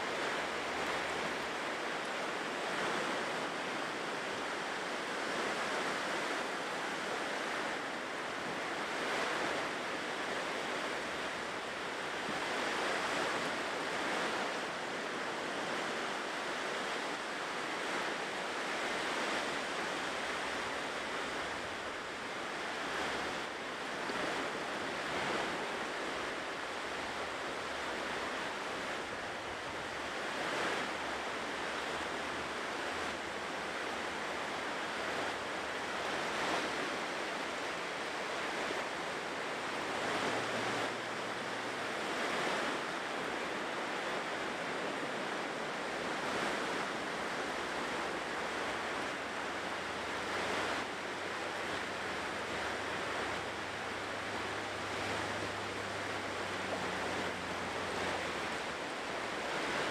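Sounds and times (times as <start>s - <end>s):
ocean surf washing on shore: 0.0s - 59.9s.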